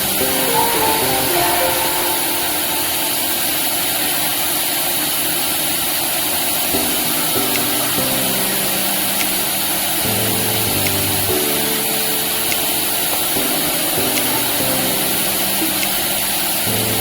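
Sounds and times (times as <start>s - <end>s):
welding arc hiss and crackle: 2.4s - 17.0s.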